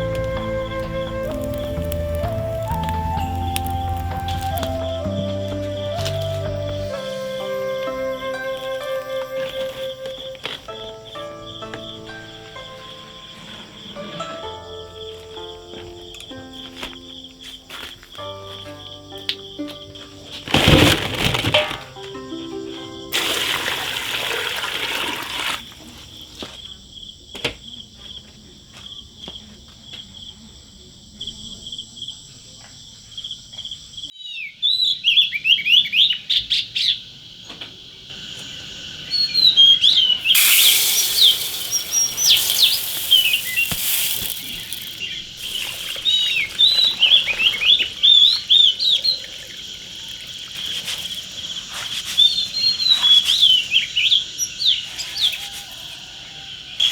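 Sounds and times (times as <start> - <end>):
small birds chirping: 0.0 - 7.0, 32.9 - 55.8
loud hiss: 0.0 - 8.4, 40.2 - 47.2.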